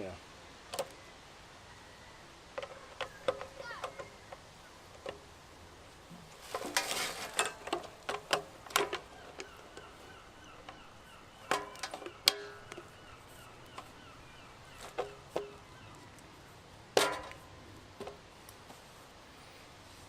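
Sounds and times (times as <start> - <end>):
metal parts knocking and rattling: 6.4 - 10.0, 11.4 - 12.9, 17.0 - 17.4.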